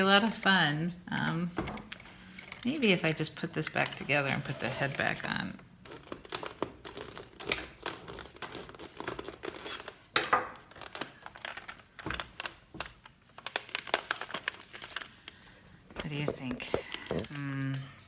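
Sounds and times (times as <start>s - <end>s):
toy parts rustling and clicking: 1.8s - 4.0s, 5.8s - 17.9s.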